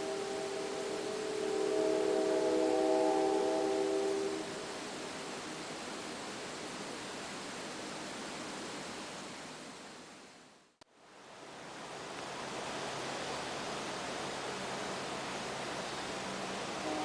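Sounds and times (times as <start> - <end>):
outdoor hiss: 0.0 - 17.0.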